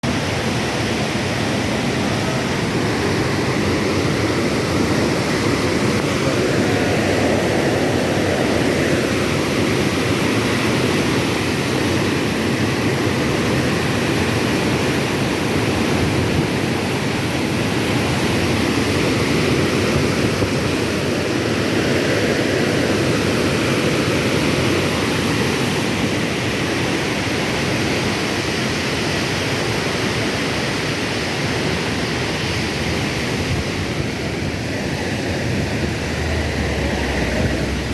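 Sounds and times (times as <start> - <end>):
water rushing through dam: 0.0 - 37.9.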